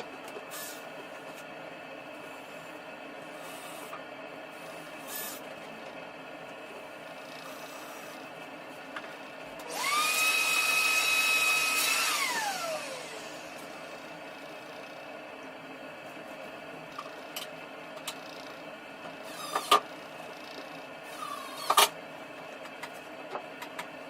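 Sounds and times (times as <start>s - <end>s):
power tool motor whine: 9.6s - 13.9s.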